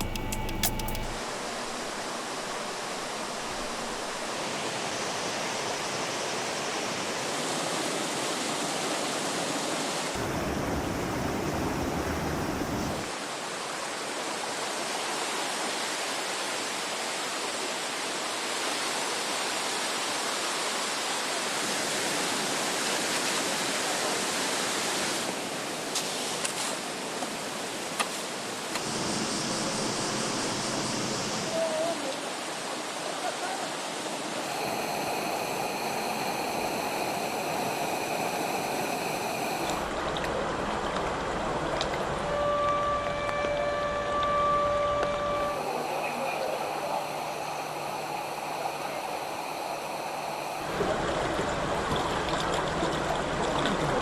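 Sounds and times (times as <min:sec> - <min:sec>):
water rushing from torrential rain: 0:01.2 - 0:44.4, 0:45.5 - 0:54.0.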